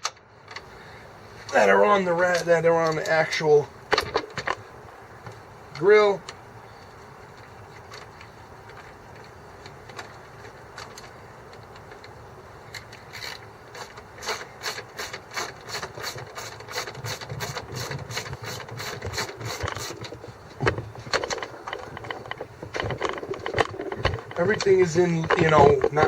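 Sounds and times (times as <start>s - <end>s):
ratchet wrench clicking: 12.7s - 20.0s.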